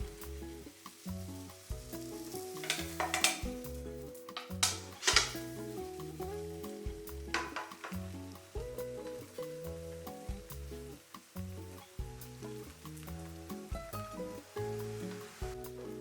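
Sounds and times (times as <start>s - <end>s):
food sizzling in a pan: 0.0s - 16.0s
spatula scraping a pan: 2.2s - 3.5s, 4.4s - 5.7s.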